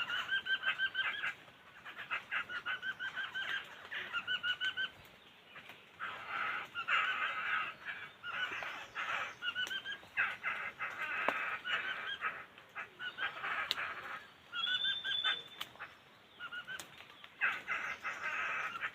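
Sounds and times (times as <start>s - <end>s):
birds rattling chatter: 0.0s - 18.9s
whistled bird note: 14.6s - 15.6s.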